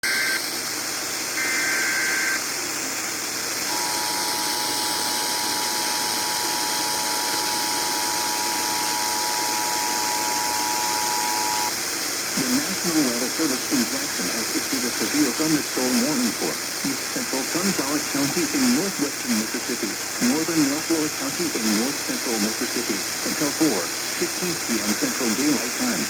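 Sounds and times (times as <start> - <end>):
two-tone attention signal: 0.0 - 0.4, 1.4 - 2.4, 3.7 - 11.7
digital data burst: 0.0 - 0.6, 1.4 - 2.5, 3.6 - 11.8, 12.4 - 26.0
radio hiss: 0.0 - 26.0.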